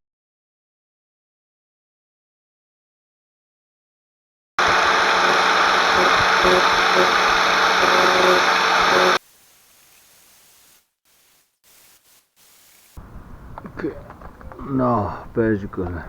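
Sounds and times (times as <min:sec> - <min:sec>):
power grinder grinding plastic: 0:04.6 - 0:09.2.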